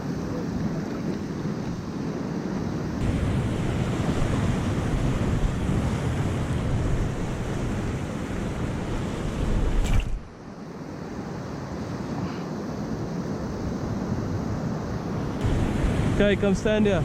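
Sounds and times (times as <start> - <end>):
ocean surf washing in: 0.1 - 17.0
wind buffeting microphone: 3.0 - 10.4, 13.7 - 17.0.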